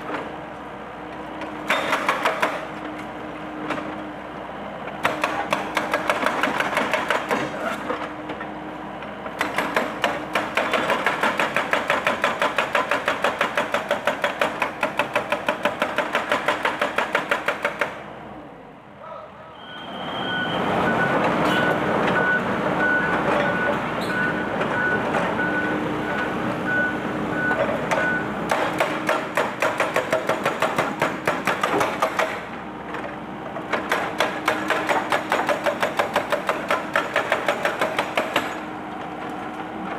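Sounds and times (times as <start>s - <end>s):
excavator engine running: 0.0s - 19.0s, 19.8s - 39.9s
hydraulic breaker hammering concrete: 1.6s - 2.8s, 5.0s - 8.0s, 9.3s - 18.0s, 27.9s - 32.6s, 33.6s - 38.7s.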